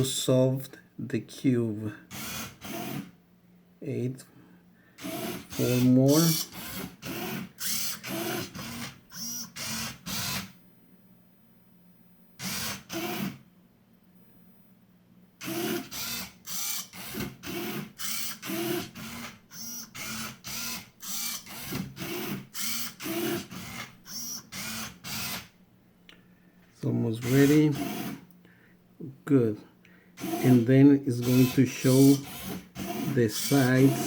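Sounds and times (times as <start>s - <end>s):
robot servos whirring: 5.0s - 10.5s, 15.4s - 25.5s, 27.2s - 28.2s, 30.2s - 34.0s.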